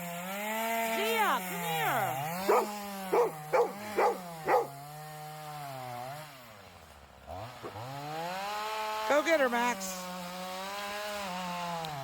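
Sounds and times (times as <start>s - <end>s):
chainsaw engine running: 0.0s - 6.6s, 7.2s - 12.0s
dog barking: 2.3s - 4.8s.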